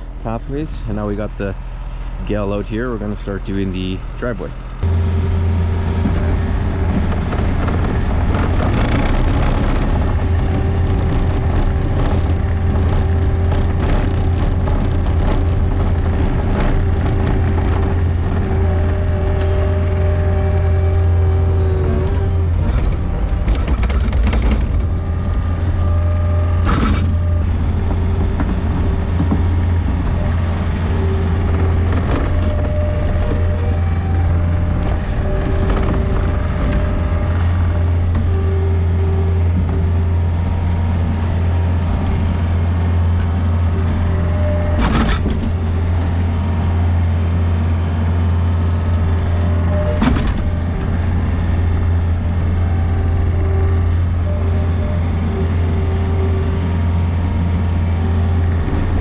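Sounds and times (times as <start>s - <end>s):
diesel engine running: 0.0s - 59.0s
machine knocks and clunks: 4.8s - 20.8s, 21.7s - 40.1s, 48.9s - 51.5s.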